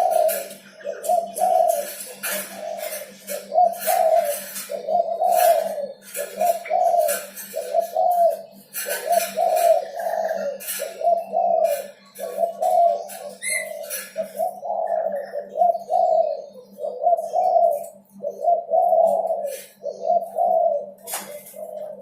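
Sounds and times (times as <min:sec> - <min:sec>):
dove cooing: 0:00.0 - 0:22.0.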